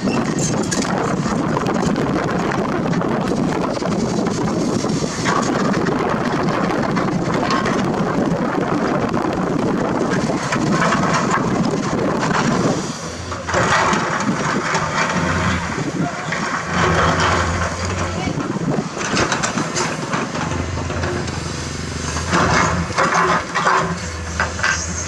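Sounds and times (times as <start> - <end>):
excavator diesel engine: 0.0 - 25.0
rock crunching: 0.2 - 21.3.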